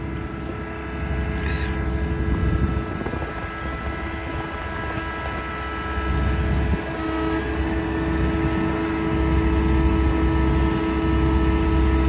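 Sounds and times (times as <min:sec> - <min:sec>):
constant whine: 0:00.0 - 0:12.0
diesel engine running: 0:00.0 - 0:12.0.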